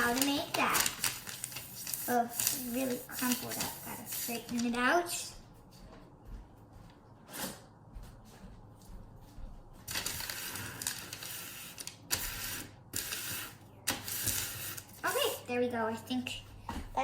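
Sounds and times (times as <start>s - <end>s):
paper crinkling and rustling: 0.0s - 4.8s, 9.8s - 12.1s.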